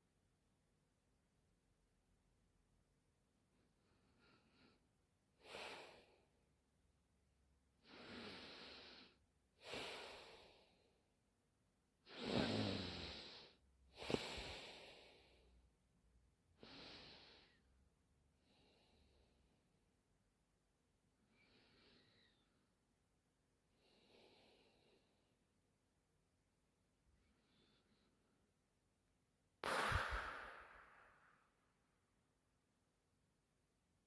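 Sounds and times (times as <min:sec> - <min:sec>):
woman snoring: 0:12.1 - 0:13.3.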